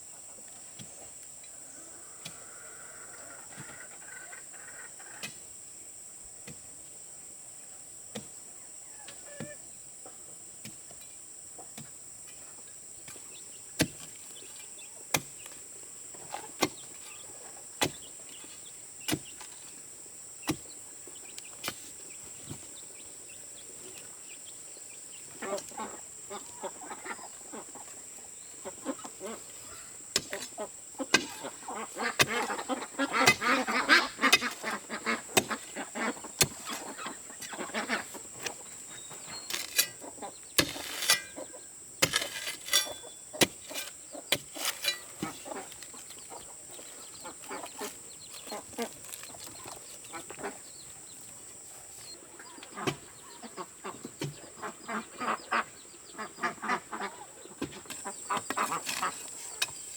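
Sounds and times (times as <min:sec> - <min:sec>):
digging tool striking soil: 0:05.2 - 0:05.4, 0:13.8 - 0:14.2, 0:15.1 - 0:15.5, 0:16.6 - 0:16.9, 0:19.0 - 0:19.5, 0:30.1 - 0:46.2, 0:57.6 - 0:59.9
ducks calling: 0:25.2 - 0:41.7, 0:42.7 - 0:50.7, 0:52.2 - 0:59.9.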